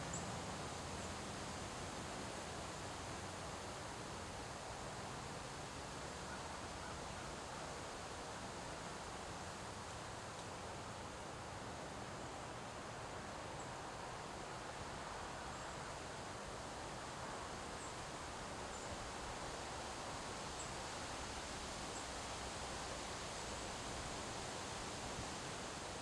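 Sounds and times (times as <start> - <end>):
wind rustling leaves: 5.6 - 26.0.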